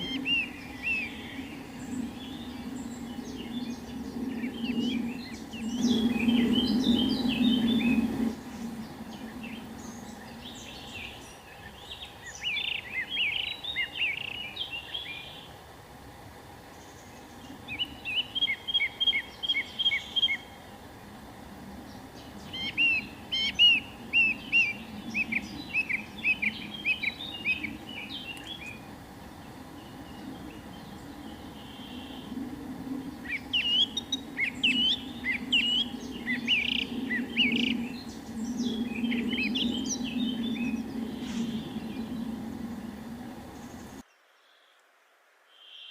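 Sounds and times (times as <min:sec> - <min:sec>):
songbird chirping: 0:00.0 - 0:15.6, 0:16.6 - 0:45.9
low background rumble: 0:14.6 - 0:44.0.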